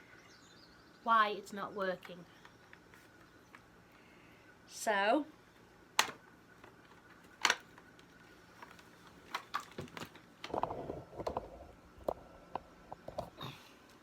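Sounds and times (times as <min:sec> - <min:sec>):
plastic parts clicking: 0:06.0 - 0:11.5
plastic rattling and knocking: 0:08.6 - 0:13.3.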